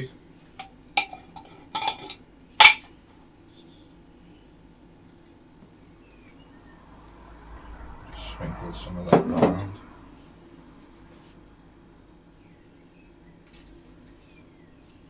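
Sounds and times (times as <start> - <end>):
kitchenware clinking and knocking: 1.0 - 2.9.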